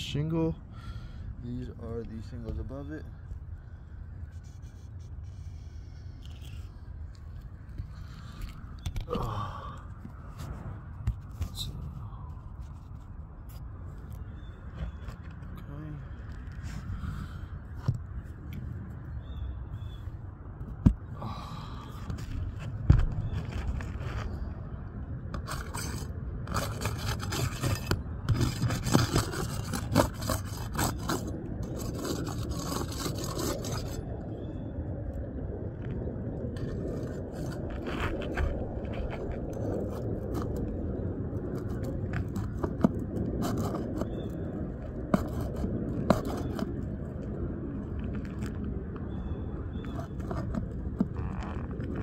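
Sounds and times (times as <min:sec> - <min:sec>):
roof shingles scraping and crackling: 0:22.0 - 0:24.4, 0:25.4 - 0:34.0, 0:36.6 - 0:40.7, 0:41.4 - 0:47.1, 0:49.8 - 0:52.0.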